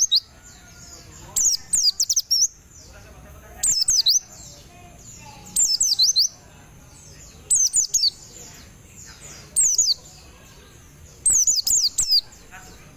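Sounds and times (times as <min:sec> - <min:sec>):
bird whistling song: 0:00.0 - 0:02.6, 0:03.6 - 0:06.4, 0:07.5 - 0:08.6, 0:09.4 - 0:10.2, 0:11.2 - 0:12.4.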